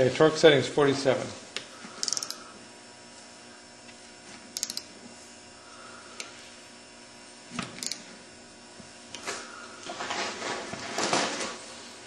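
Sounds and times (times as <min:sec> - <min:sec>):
ratcheting torque wrench clicking: 0:02.0 - 0:02.4, 0:04.6 - 0:04.9, 0:07.8 - 0:08.0.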